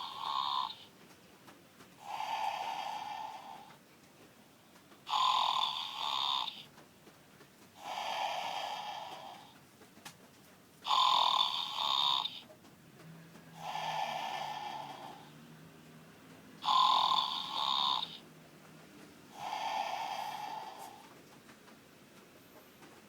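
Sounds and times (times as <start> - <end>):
person snoring: 0.0 - 0.8, 2.0 - 3.8, 5.1 - 6.6, 7.8 - 9.6, 10.9 - 12.4, 13.6 - 15.4, 16.6 - 18.2, 19.3 - 21.1.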